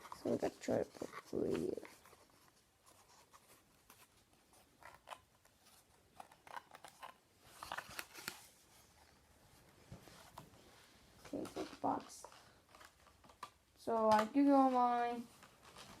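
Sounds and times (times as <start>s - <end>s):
paper and cardboard rustling: 0.0s - 16.0s.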